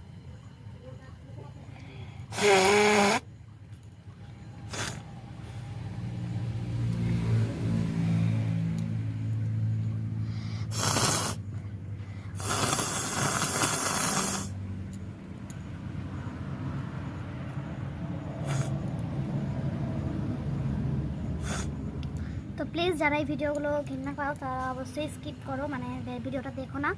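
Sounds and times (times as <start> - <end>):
woman blowing her nose: 2.3 - 3.2, 4.7 - 5.0, 10.7 - 11.4, 12.4 - 14.5, 18.4 - 18.7.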